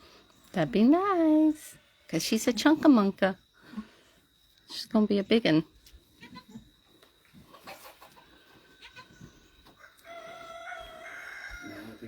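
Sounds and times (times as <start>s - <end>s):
rooster crowing: 9.6s - 12.0s.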